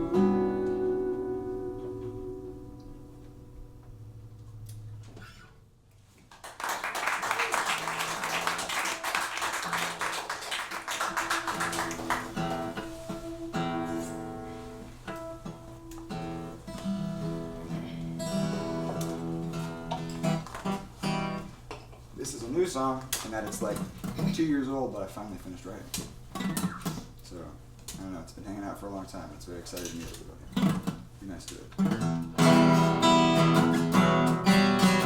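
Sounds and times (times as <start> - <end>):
acoustic guitar playing: 0.0 - 5.5, 7.8 - 21.7, 26.3 - 27.1, 31.8 - 35.0.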